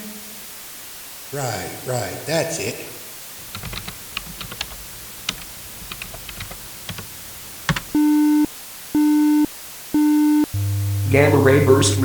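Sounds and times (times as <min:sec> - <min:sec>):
typing on computer keyboard: 0:03.4 - 0:08.0.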